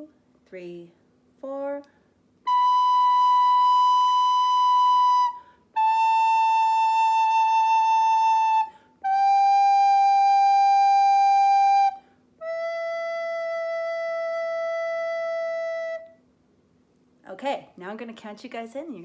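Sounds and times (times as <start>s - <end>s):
recorder playing long notes: 2.5s - 16.1s.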